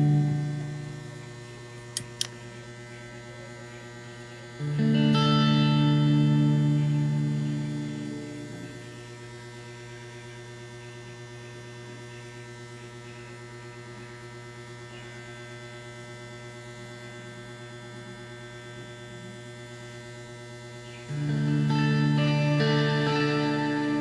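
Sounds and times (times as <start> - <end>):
amplifier mains hum with hiss: 0.0 - 24.0.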